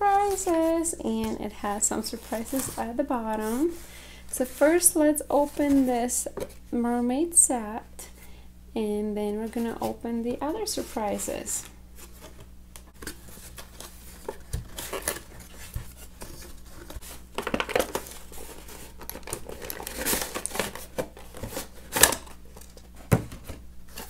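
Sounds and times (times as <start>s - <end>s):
packaging crinkling and rustling: 10.7s - 24.0s.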